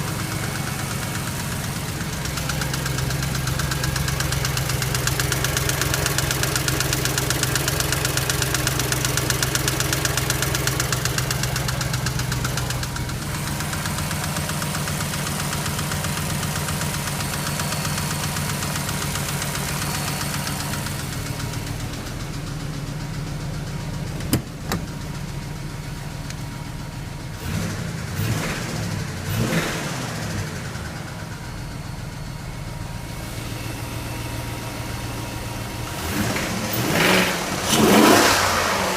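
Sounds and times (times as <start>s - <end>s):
car engine running with rhythmic knock: 0.0s - 29.6s.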